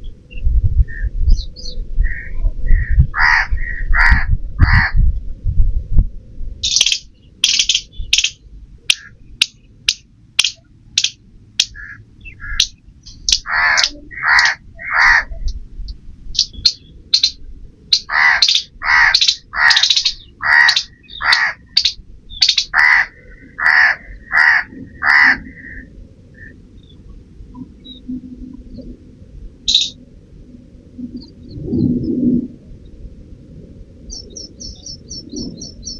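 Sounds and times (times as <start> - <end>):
crow cawing: 2.1 - 5.0, 11.7 - 12.7, 13.4 - 15.4, 18.0 - 26.5
sharp clicks: 6.6 - 11.8, 12.6 - 14.0, 16.4 - 22.7
high-pitched bird calls: 6.6 - 15.6, 16.4 - 27.0, 29.7 - 30.0, 34.1 - 35.9.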